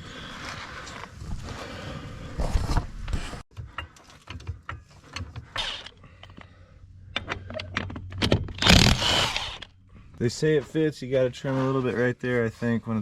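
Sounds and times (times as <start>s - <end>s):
sharp mechanical clicks and knocks: 3.5s - 6.5s, 7.1s - 9.7s.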